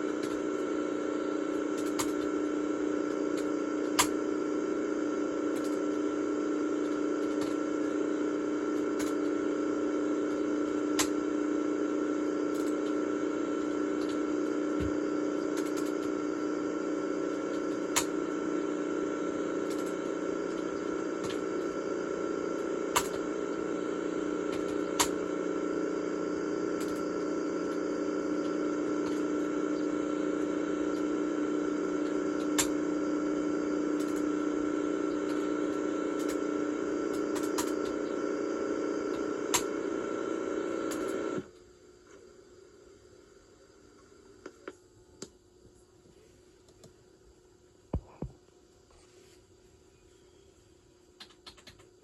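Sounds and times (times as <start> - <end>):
sharp clicks: 1.5 - 2.5, 3.1 - 4.2, 5.5 - 6.0, 10.9 - 11.2, 15.4 - 16.2, 19.6 - 21.8, 22.6 - 23.3, 24.4 - 25.3, 26.6 - 32.9, 33.9 - 34.5, 35.1 - 36.5, 37.1 - 38.2, 39.1 - 39.8, 51.2 - 51.9.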